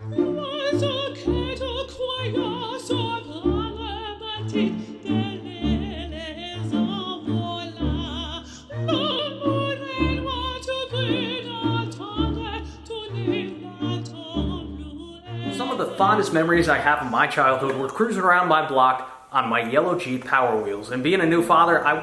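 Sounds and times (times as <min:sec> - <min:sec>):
person singing with vibrato: 0:00.0 - 0:22.0.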